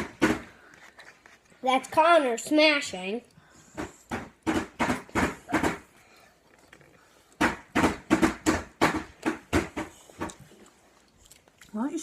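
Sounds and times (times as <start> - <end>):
chewing crunchy chips: 10.3 - 12.0.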